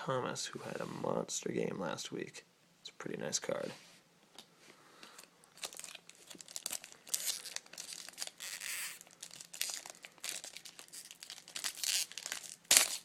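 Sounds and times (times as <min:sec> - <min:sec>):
foil wrapper crinkling and tearing: 0:05.5 - 0:13.0.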